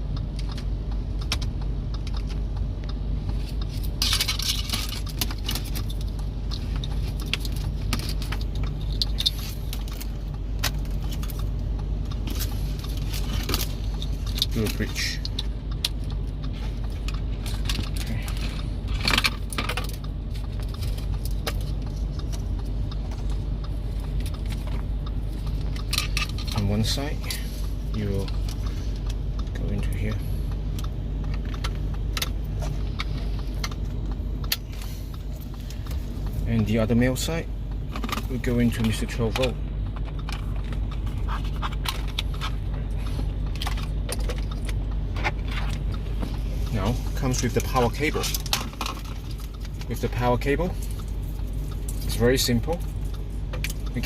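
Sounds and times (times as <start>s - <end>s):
steady low hum: 0.0s - 54.0s
plastic plugs clicking and scraping: 3.3s - 11.5s, 30.8s - 54.0s.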